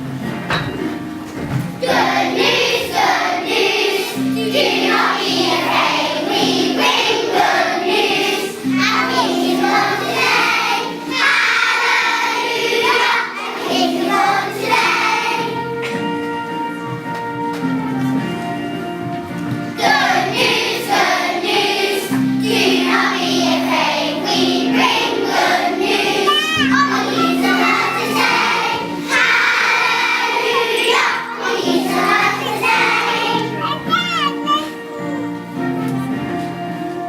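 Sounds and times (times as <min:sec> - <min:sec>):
held instrumental notes: 0:00.0 - 0:37.0
children singing: 0:01.8 - 0:16.2, 0:19.7 - 0:34.9.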